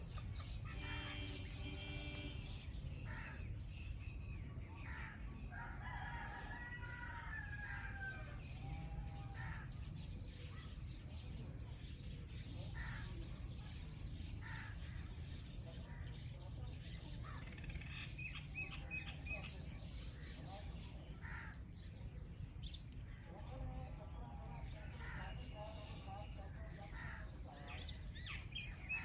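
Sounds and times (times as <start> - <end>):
birds chirping: 0.0 - 29.0
steady low rumble: 0.0 - 29.0
rooster crowing: 5.5 - 8.3.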